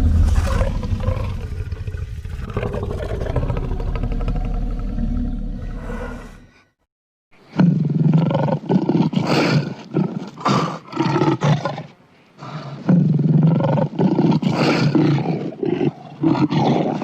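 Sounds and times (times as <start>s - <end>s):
monster roar: 0.0s - 6.4s.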